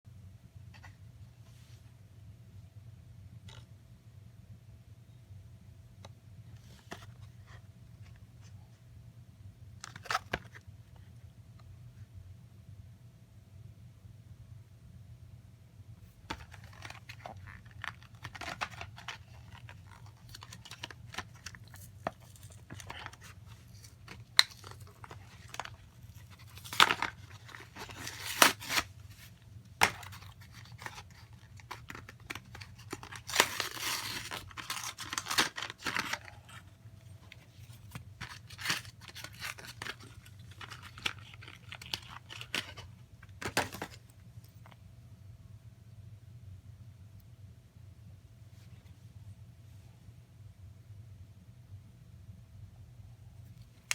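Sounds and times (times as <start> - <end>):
packaging tearing and crinkling: 16.4 - 36.6, 37.5 - 44.0.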